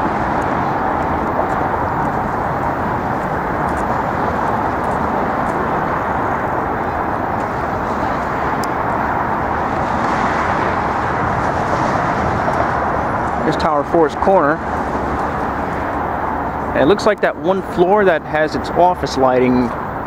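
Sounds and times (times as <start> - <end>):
city street traffic: 0.0 - 20.0.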